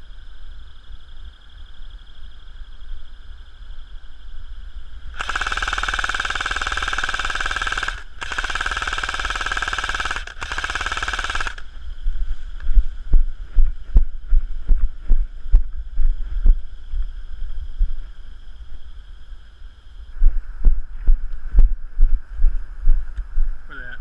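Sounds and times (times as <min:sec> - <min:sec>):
airsoft machine gun rattling: 0:05.2 - 0:11.7.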